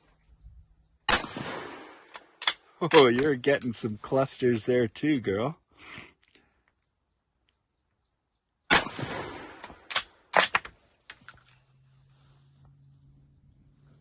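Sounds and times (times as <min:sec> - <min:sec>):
rifle shot with echo: 0:01.1 - 0:02.4, 0:08.7 - 0:10.6
rifle bolt metallic clacks: 0:02.1 - 0:04.0, 0:09.6 - 0:11.4.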